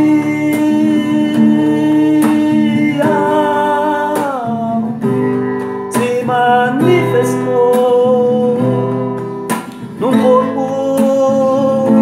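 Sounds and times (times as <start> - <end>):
person singing wordless vowel: 0.0 - 5.1, 5.9 - 9.0, 9.9 - 12.0
acoustic guitar strumming: 0.0 - 12.0.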